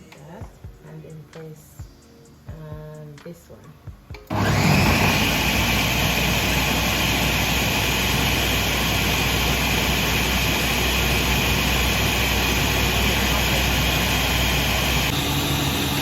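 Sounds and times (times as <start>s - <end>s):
blender motor whirring: 4.3s - 16.0s.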